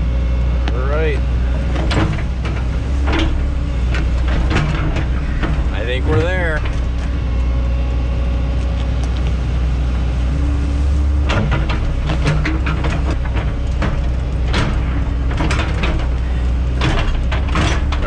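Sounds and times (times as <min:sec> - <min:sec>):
excavator diesel engine running: 0:00.0 - 0:18.0
metal clanks and knocks: 0:00.7 - 0:07.7, 0:10.3 - 0:18.0.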